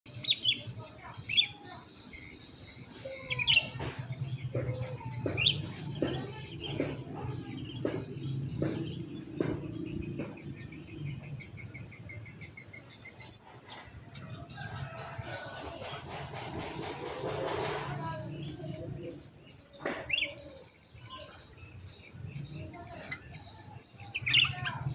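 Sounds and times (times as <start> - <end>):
songbird chirping: 0.1 - 24.9.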